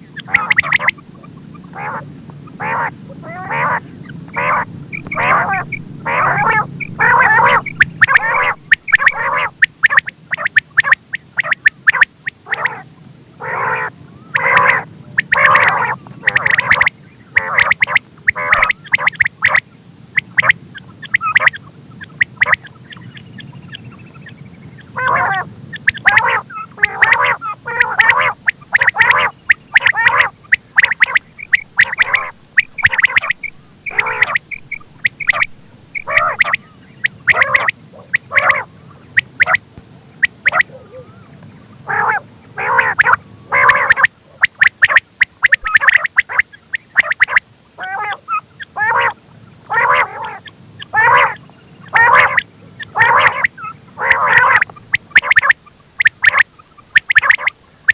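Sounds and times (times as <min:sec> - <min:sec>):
quail calling: 0:00.0 - 0:57.9.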